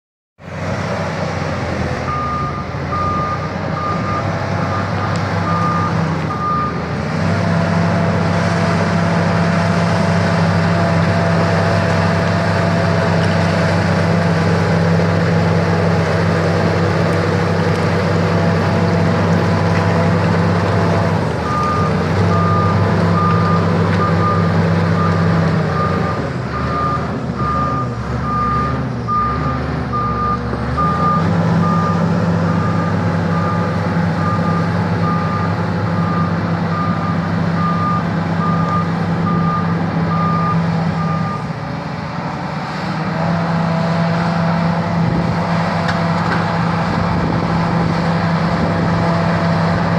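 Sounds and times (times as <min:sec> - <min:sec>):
bulldozer diesel engine running: 0:00.4 - 0:49.9
reversing alarm beeping: 0:02.1 - 0:06.9, 0:21.4 - 0:41.5.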